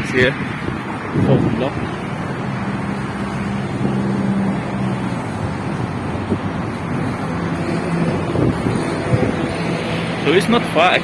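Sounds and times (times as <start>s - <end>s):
road traffic noise: 0.0s - 11.0s
vehicle engine hum: 0.0s - 11.0s.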